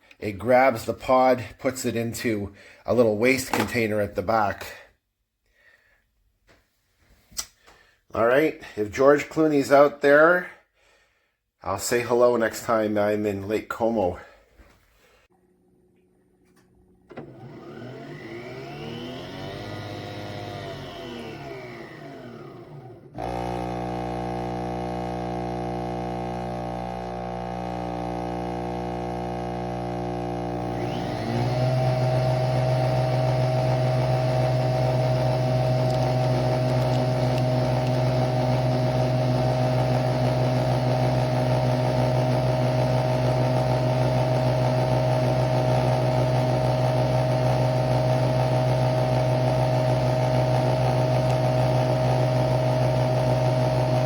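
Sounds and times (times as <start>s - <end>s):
coffee machine motor hum: 17.1s - 54.0s.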